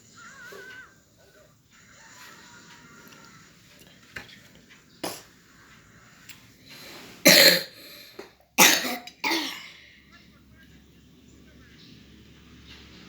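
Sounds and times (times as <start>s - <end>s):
child coughing: 7.2s - 8.0s, 8.6s - 9.8s.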